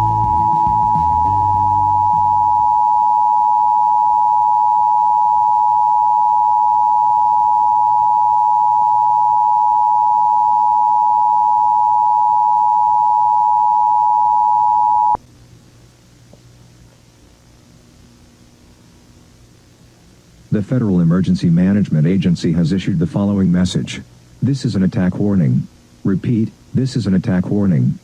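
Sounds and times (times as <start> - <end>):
steady dual tone alert: 0.0 - 15.2
faint hiss: 15.2 - 28.0.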